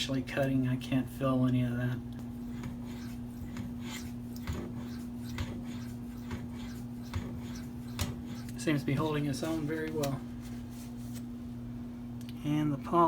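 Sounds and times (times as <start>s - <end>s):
knife scraping on sharpening stone: 2.5s - 8.6s.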